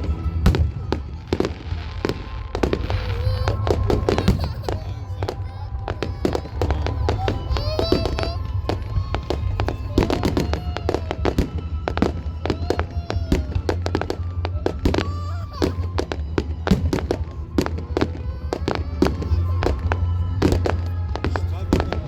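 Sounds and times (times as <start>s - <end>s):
fireworks bangs and crackles: 0.0s - 22.0s
music playing: 0.0s - 22.0s.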